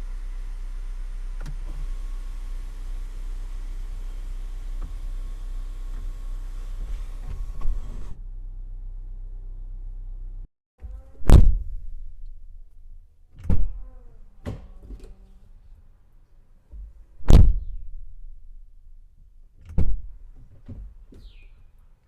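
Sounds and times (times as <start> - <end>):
car door slamming: 0.0 - 8.2, 10.8 - 22.0
car door latch clicks: 1.3 - 3.0, 3.7 - 8.2, 10.8 - 15.8, 16.7 - 21.7.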